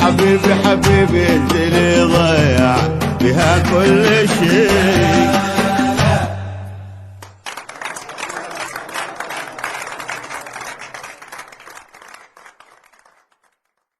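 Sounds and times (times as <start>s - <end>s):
audience applause: 7.2s - 13.9s.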